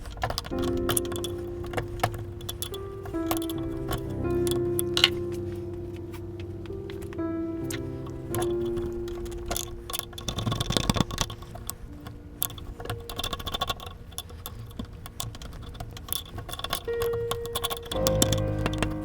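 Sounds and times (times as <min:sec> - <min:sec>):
background music with held notes: 0:00.5 - 0:13.8, 0:16.8 - 0:19.0
hand tools clicking on metal: 0:07.7 - 0:19.0.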